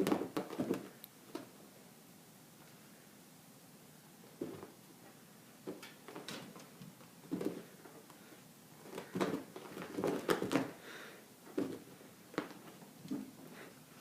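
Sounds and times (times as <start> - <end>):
cat paws scrabbling on floor: 5.6 - 8.2, 8.8 - 10.8.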